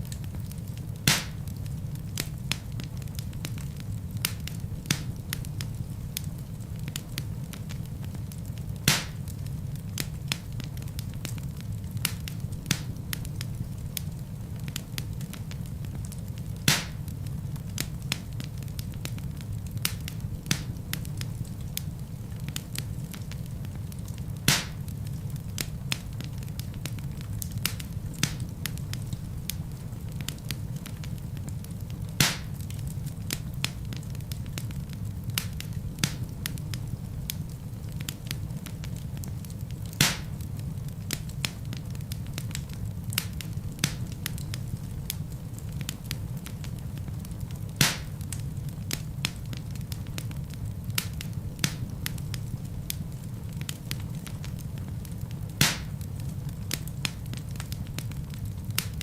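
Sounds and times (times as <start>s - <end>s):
fire crackling in fireplace: 0.0s - 59.0s
logs popping: 1.1s - 1.4s, 8.9s - 9.2s, 16.7s - 17.0s, 24.5s - 24.8s, 32.2s - 33.4s, 40.0s - 40.4s, 47.8s - 48.2s, 55.6s - 56.0s.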